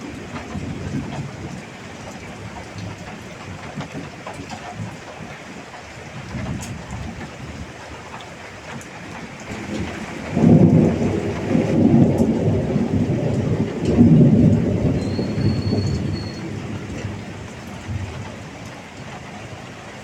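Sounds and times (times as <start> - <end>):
heavy rain: 0.0 - 20.0
rolling thunder: 9.5 - 18.7.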